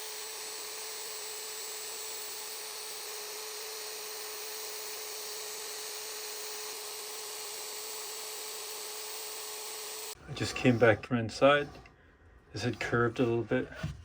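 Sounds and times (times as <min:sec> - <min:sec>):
wood router running: 0:00.0 - 0:11.0.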